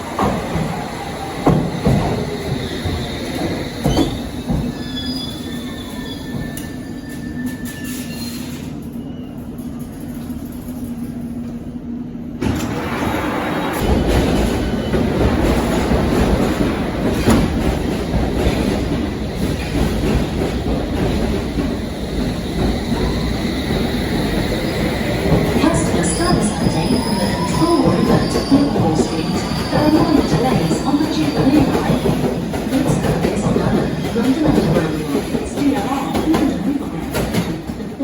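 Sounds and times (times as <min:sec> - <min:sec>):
train low hum: 0:00.0 - 0:38.0
train rumbling: 0:00.0 - 0:38.0
train wheel squeal: 0:02.6 - 0:09.9, 0:26.2 - 0:32.2.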